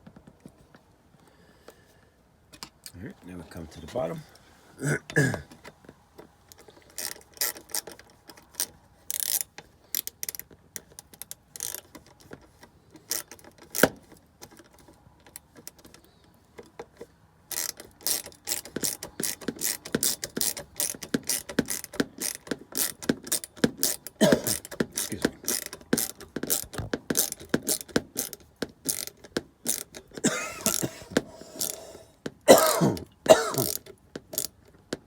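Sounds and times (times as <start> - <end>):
ratcheting clicks: 6.5 - 31.9, 33.0 - 35.0.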